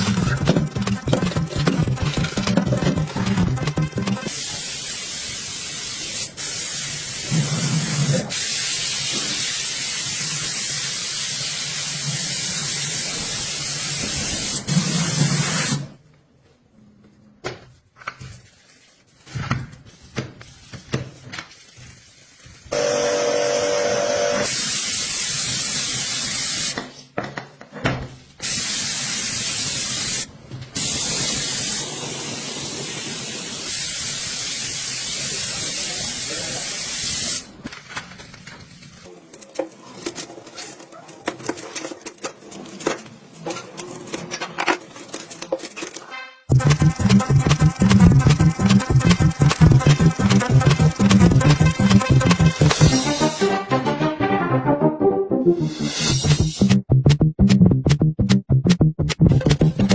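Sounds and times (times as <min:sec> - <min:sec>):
high-pressure spray hissing: 0:04.3 - 0:07.3, 0:08.3 - 0:15.8, 0:24.4 - 0:26.7, 0:28.4 - 0:37.5
pressure washer hum: 0:46.5 - 0:53.1.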